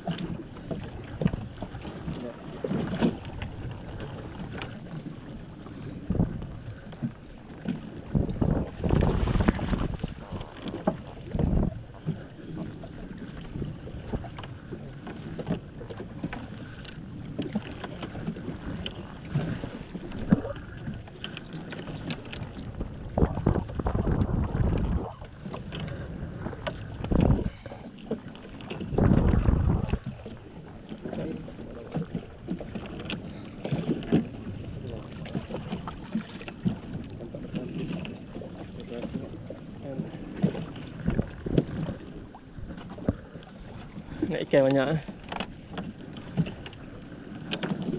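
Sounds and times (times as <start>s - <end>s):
knocks and thuds against boat: 6.0s - 30.3s, 30.9s - 46.8s
wind gusts on microphone: 7.9s - 11.9s, 22.1s - 27.8s, 28.8s - 30.4s.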